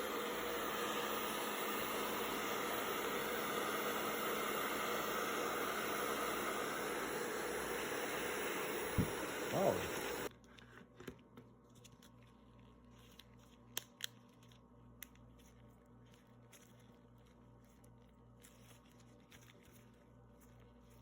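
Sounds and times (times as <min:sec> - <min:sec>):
hairdryer blowing: 0:00.0 - 0:10.3
cards clicking and crinkling: 0:12.9 - 0:17.0.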